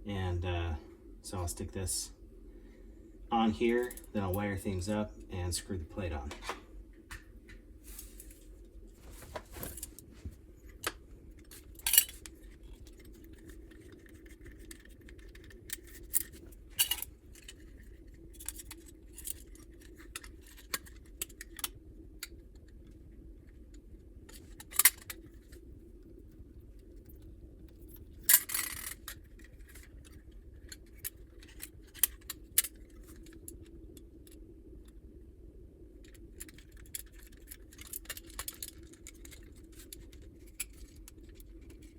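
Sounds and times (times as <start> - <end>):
faint steady hum: 0.0 - 41.9
metallic tool clicks and clinks: 11.8 - 12.3, 16.2 - 17.1.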